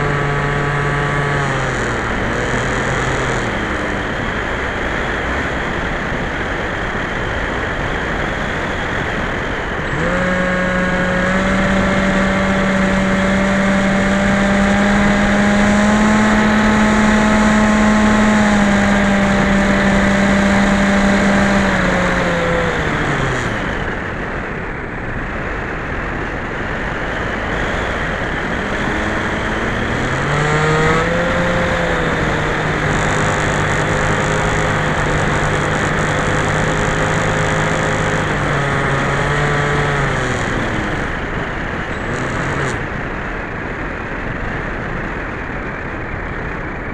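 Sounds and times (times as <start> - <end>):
model plane motor drone: 0.0 - 46.9.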